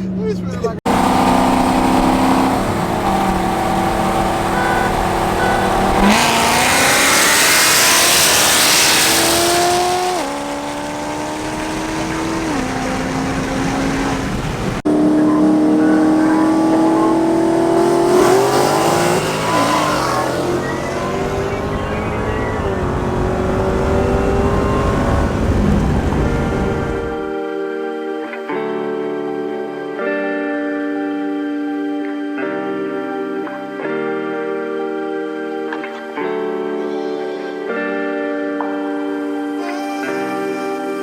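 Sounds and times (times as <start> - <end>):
car engines accelerating hard: 0.1 - 27.3.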